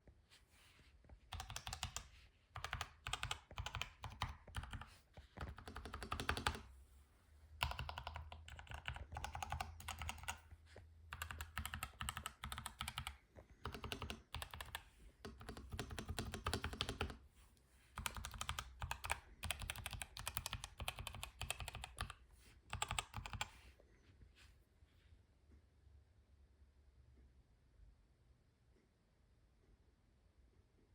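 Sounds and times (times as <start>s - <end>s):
mechanical keyboard typing: 1.3s - 6.7s, 7.6s - 10.5s, 11.1s - 17.2s, 18.0s - 23.6s.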